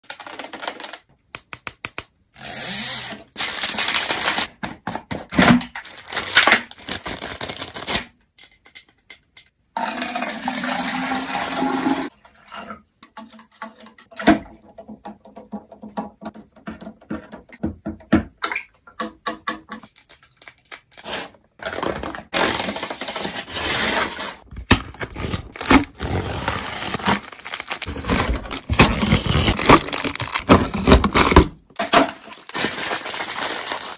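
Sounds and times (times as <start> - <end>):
plastic packaging rustling: 0.0 - 2.0, 3.4 - 4.5, 5.5 - 8.1, 20.0 - 33.9.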